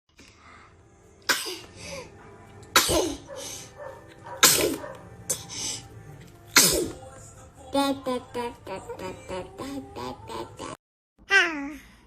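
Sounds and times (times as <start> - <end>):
baby sneezing: 2.7 - 3.4, 4.4 - 5.5, 6.5 - 7.0.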